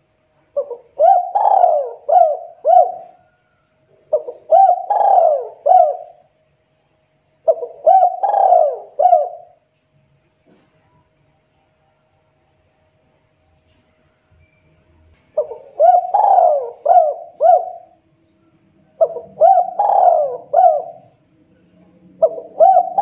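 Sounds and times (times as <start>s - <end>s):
dove cooing: 0.5s - 6.3s, 7.4s - 9.6s, 15.4s - 18.0s, 19.0s - 21.2s, 21.8s - 23.0s.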